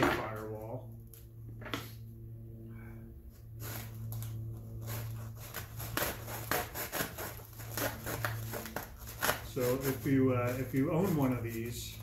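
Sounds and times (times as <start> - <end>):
saw rasping through foam: 3.6 - 12.0.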